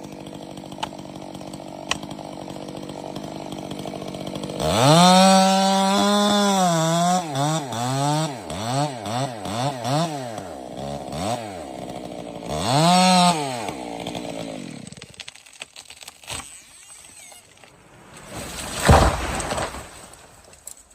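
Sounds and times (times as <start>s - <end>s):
chainsaw engine revving: 0.0s - 15.3s.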